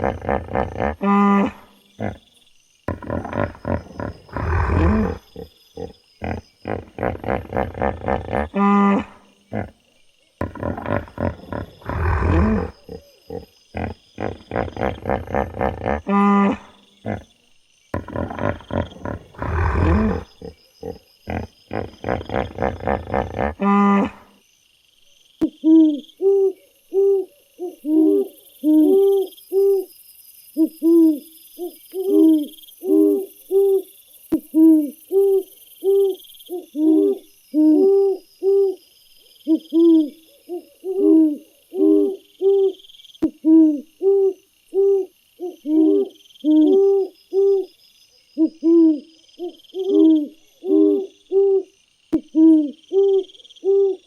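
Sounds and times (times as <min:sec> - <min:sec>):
faint high rhythmic chirping: 0:00.0 - 0:54.0
bird hooting calls: 0:10.4 - 0:17.2, 0:25.6 - 0:29.9, 0:39.4 - 0:42.8, 0:48.4 - 0:51.7.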